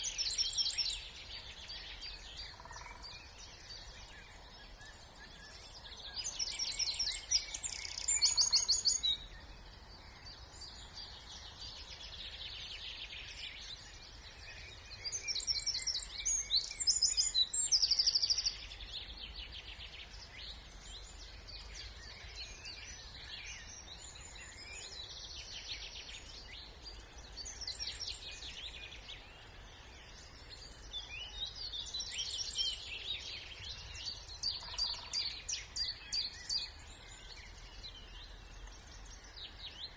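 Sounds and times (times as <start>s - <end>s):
loud bird song phrase: 0.0s - 39.9s
quieter birds singing: 0.0s - 39.9s.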